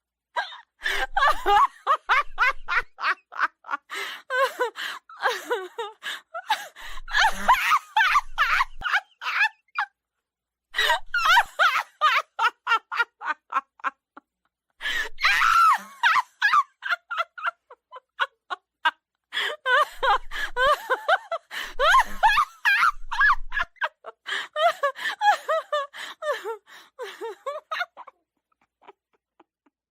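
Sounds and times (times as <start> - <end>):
girl giggling: 7.1 - 9.9, 19.6 - 24.2.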